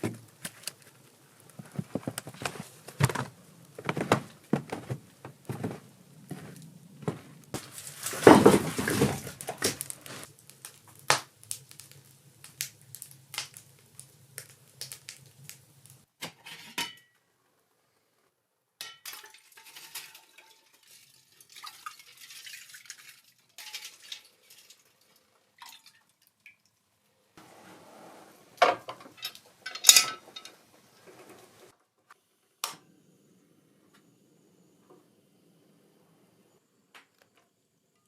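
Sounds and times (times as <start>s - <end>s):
cookware and utensils clinking: 16.3s - 17.2s, 18.8s - 24.8s, 28.6s - 30.7s.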